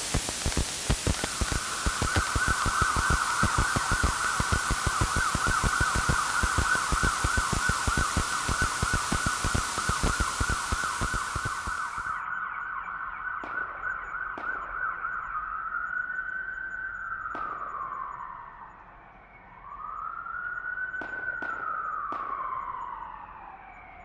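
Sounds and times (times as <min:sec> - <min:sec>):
sharp clicks: 0:00.0 - 0:12.1.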